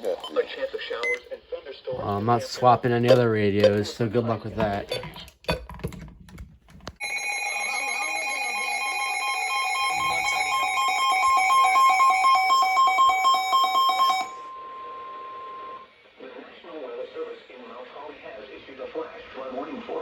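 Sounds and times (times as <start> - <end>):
steady single-tone warning alarm: 7.0 - 15.9.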